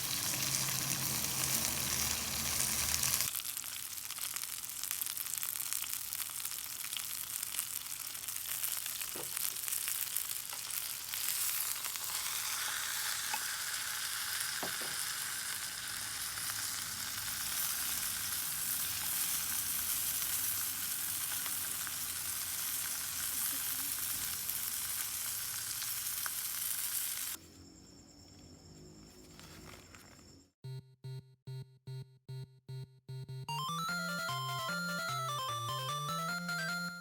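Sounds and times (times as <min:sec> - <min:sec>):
campfire sizzling and crackling: 0:00.0 - 0:27.4.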